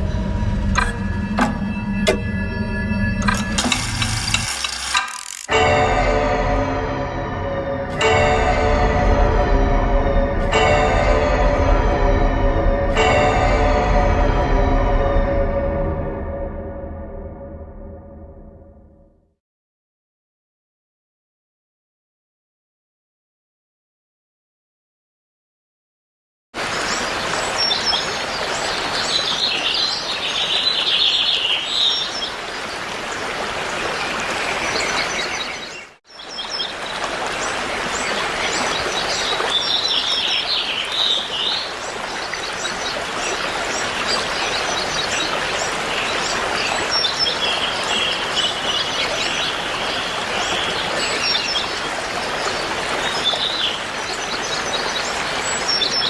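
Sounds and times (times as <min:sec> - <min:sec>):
birds chirping and trilling: 0:26.7 - 0:56.0.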